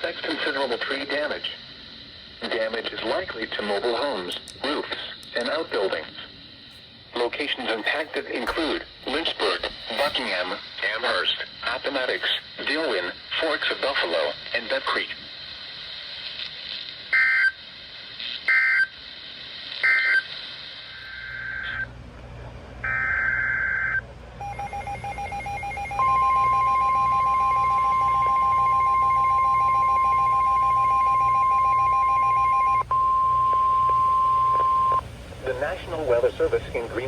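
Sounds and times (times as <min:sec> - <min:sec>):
steady loud warning alarm tone: 0:22.8 - 0:37.0
digital tones: 0:24.4 - 0:35.0.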